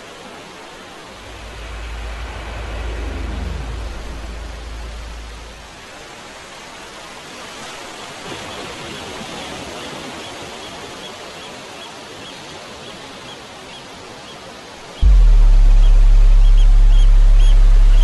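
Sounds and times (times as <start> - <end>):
loud low hum: 1.0 - 6.4, 15.0 - 18.0.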